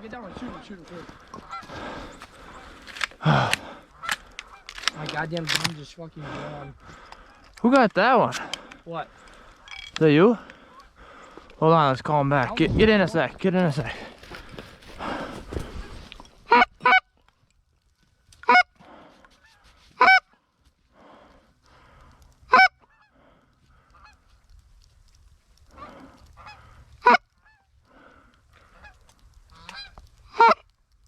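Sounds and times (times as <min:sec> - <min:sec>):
faint honks and clucks: 0:00.0 - 0:02.6, 0:22.4 - 0:24.6, 0:25.6 - 0:30.7
goose call honks: 0:16.5 - 0:17.1, 0:18.4 - 0:18.7, 0:20.0 - 0:20.3, 0:22.5 - 0:23.2, 0:25.8 - 0:27.7, 0:28.8 - 0:30.6.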